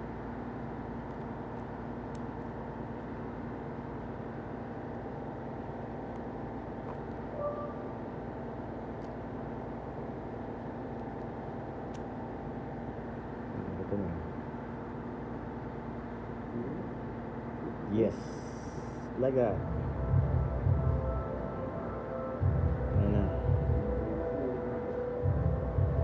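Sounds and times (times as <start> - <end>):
low mechanical hum: 0.0 - 26.0
brief short tone: 7.3 - 7.9.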